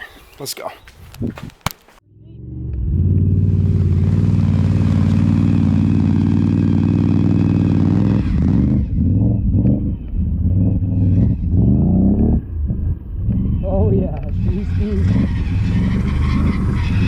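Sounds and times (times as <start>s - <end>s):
atv engine running under throttle: 2.1s - 17.0s.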